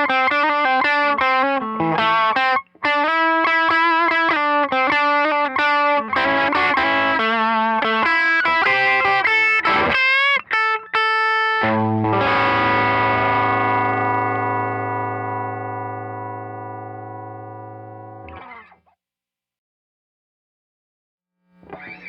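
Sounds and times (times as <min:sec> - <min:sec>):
overdriven electric guitar lead: 0:00.0 - 0:18.8, 0:21.6 - 0:22.0
guitar chord ringing out: 0:11.6 - 0:18.5.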